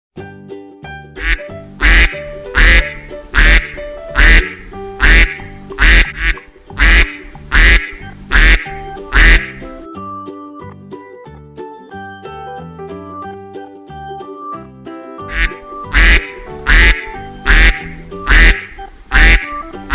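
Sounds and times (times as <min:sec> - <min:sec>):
background music: 0:00.2 - 0:19.9
duck quacking loudly: 0:01.2 - 0:09.8, 0:15.3 - 0:19.9.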